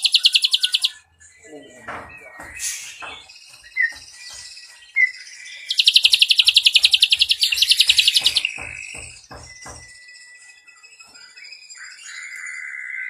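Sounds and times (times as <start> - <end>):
bird whistled chirps: 0.0 - 1.0, 2.2 - 13.0
fast bird trill: 0.0 - 1.0, 2.5 - 10.0.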